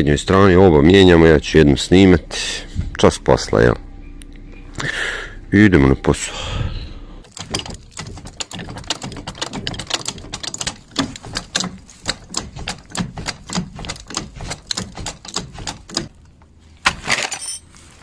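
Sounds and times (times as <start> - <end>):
hand tools clicking: 7.3 - 17.7.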